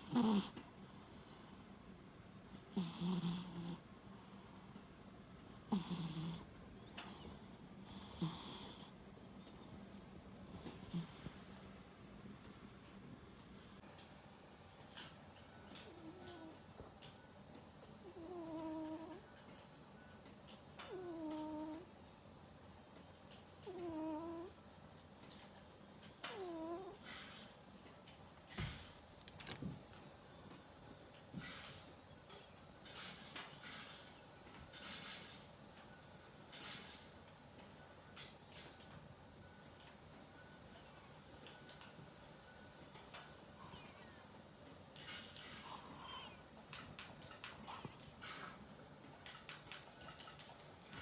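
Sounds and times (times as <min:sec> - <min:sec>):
cat snoring: 0:00.0 - 0:01.6, 0:02.5 - 0:04.6, 0:05.5 - 0:09.8, 0:10.5 - 0:11.7, 0:15.8 - 0:16.5, 0:18.0 - 0:19.2, 0:20.9 - 0:21.9, 0:23.6 - 0:24.6, 0:26.3 - 0:27.4.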